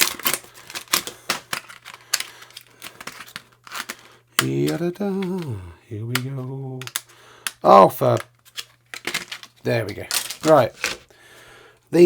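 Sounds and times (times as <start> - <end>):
plastic packaging tearing: 0.0 - 7.1, 8.0 - 11.1
person speaking: 4.4 - 7.0, 7.6 - 8.2, 9.6 - 10.8.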